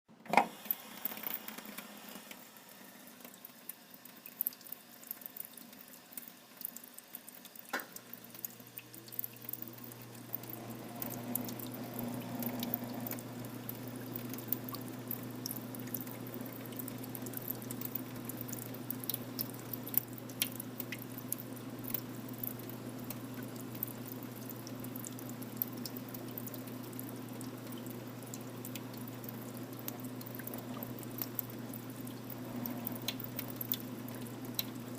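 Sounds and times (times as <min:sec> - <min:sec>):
water trickling into a basin: 0:02.5 - 0:34.9
compressor humming: 0:07.7 - 0:34.9.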